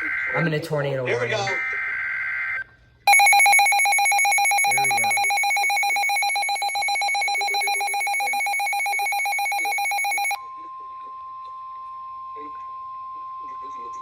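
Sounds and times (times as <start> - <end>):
steady single-pitch alarm tone: 1.5 - 10.4
rapidly pulsing alert tone: 3.1 - 10.4.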